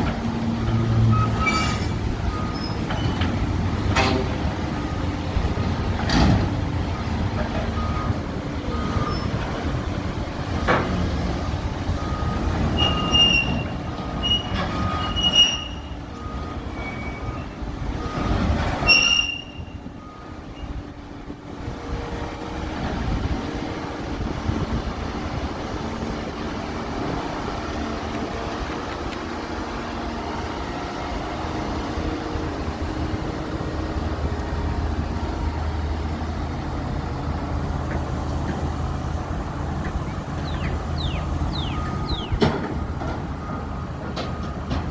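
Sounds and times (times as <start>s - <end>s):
diesel engine running: 0.0s - 18.9s
reversing alarm beeping: 0.6s - 3.2s, 7.0s - 9.4s, 12.0s - 20.8s, 40.5s - 44.8s
high metallic squeals: 1.2s - 3.2s, 12.8s - 16.0s, 18.8s - 19.8s.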